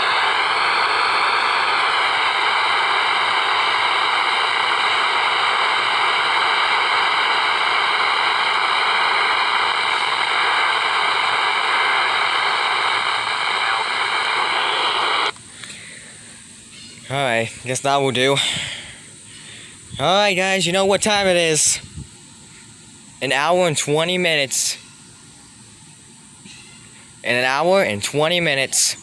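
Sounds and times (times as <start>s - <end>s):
steady whistling tones: 0.0s - 15.3s
radio static hiss: 0.0s - 29.0s.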